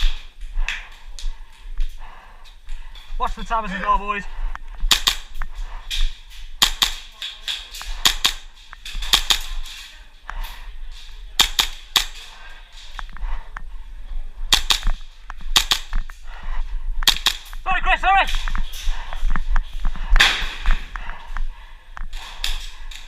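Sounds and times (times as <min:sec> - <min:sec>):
airsoft gun shots: 0:04.9 - 0:05.4, 0:06.6 - 0:07.0, 0:14.5 - 0:16.0, 0:17.0 - 0:17.5.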